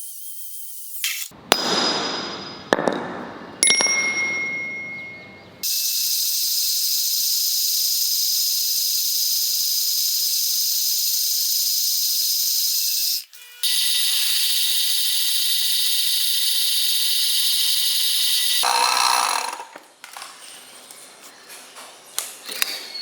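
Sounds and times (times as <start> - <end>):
power tool whining on metal: 12.8 - 19.7.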